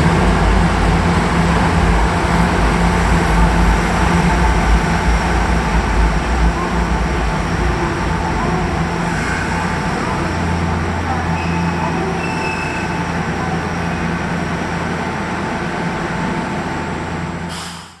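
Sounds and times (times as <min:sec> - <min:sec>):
electric train low rumble: 0:00.0 - 0:18.0.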